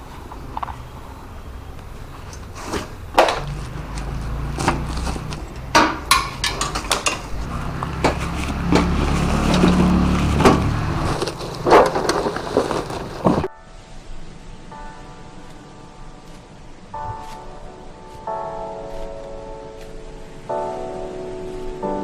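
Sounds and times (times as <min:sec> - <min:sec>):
low rumble: 0:03.0 - 0:13.5
knocks and clicks: 0:03.2 - 0:13.5.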